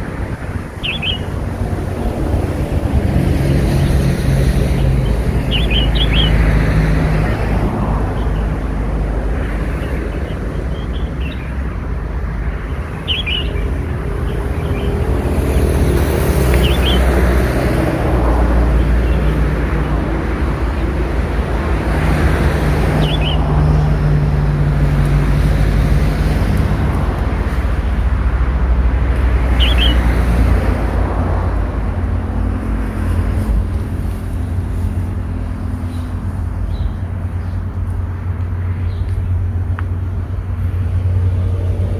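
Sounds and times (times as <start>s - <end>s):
traffic rumble: 0.0s - 41.9s
bird chick chirping: 0.8s - 1.3s, 13.0s - 13.7s, 29.6s - 30.0s.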